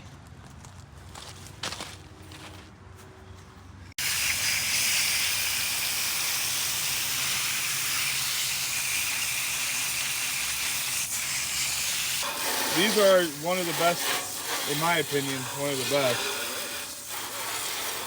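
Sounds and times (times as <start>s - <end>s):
spraying hiss: 4.0s - 18.0s.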